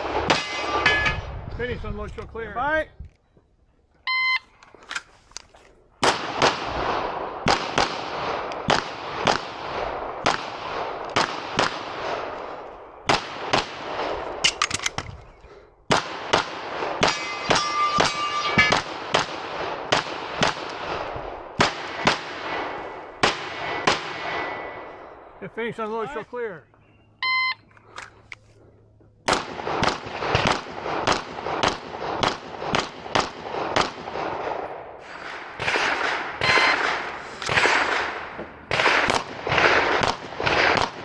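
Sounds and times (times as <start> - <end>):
pistol shots echoing: 0.0 - 1.1, 6.0 - 14.6, 15.9 - 25.3, 29.3 - 41.0.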